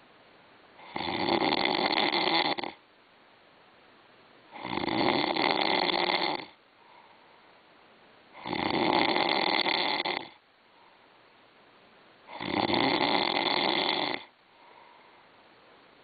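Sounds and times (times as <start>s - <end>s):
person snoring: 0.8s - 2.8s, 4.5s - 6.6s, 8.4s - 10.4s, 12.3s - 14.3s.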